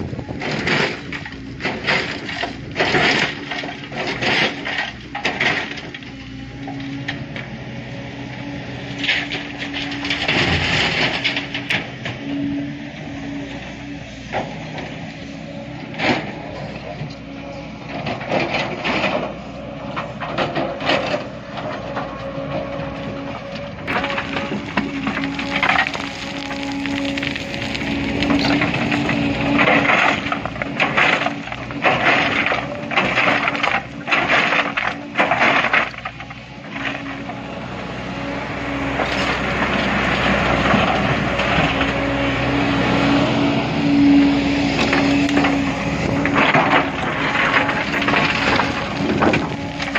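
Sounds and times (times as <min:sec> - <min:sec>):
excavator engine running: 0:00.0 - 0:49.9
rock scraping against steel: 0:23.8 - 0:37.4, 0:38.9 - 0:49.9.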